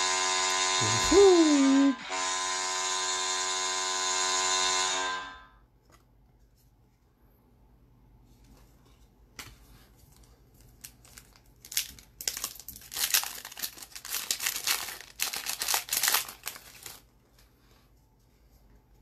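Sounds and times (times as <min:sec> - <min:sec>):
wrapper crinkling and tearing: 0:10.1 - 0:17.1.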